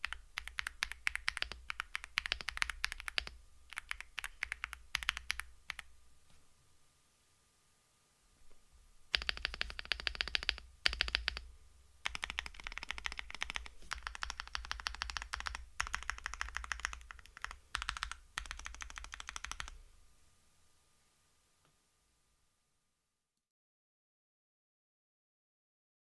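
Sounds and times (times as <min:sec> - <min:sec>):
mechanical keyboard typing: 0:00.0 - 0:05.9, 0:09.1 - 0:19.8.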